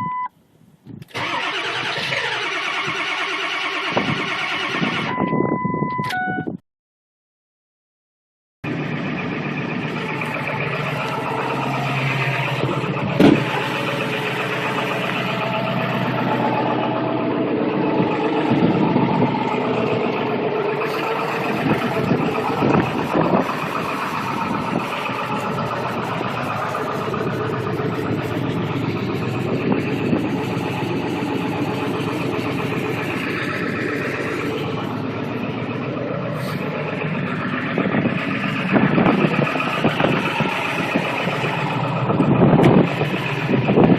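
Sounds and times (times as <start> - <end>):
diesel engine cranking: 1.0 - 6.3, 8.7 - 43.9.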